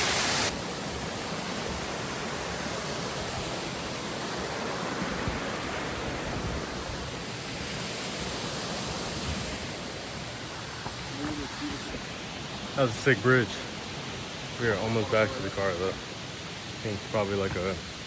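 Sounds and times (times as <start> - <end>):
rushing falling water: 0.0 - 18.0.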